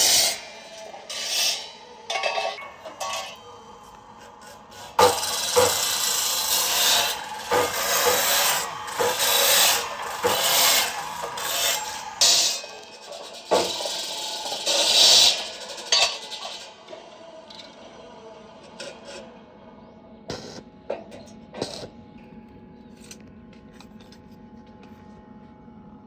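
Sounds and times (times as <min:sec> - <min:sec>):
tool rasping and scraping: 0:00.0 - 0:16.8.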